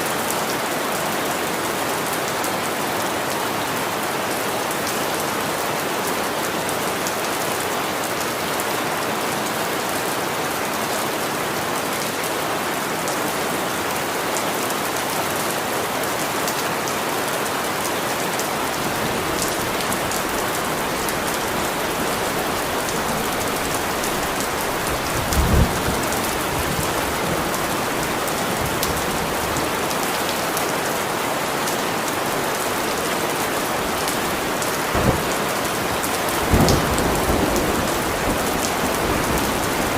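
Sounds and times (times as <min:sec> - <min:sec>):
heavy rain falling: 0:00.0 - 0:39.9
low rumble of thunder: 0:19.2 - 0:27.2, 0:36.4 - 0:39.9.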